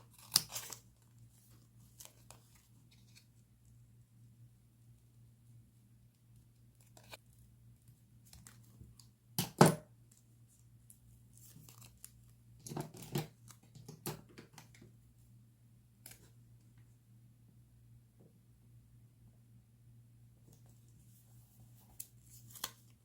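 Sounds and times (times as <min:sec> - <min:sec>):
paper and tape rustling and tearing: 0:00.0 - 0:03.3
scissors snipping paper: 0:00.1 - 0:00.8.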